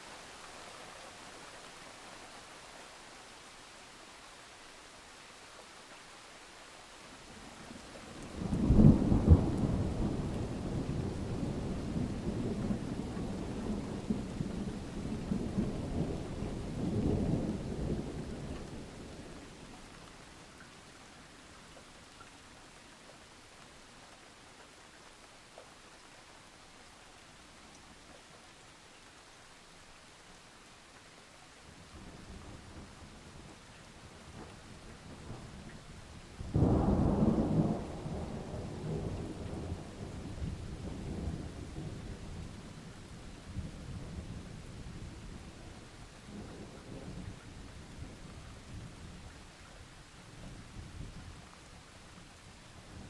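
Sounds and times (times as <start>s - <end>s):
steady rain hiss: 0.0s - 53.0s
thunderclap and rolling rumble: 8.2s - 19.4s, 34.2s - 49.3s.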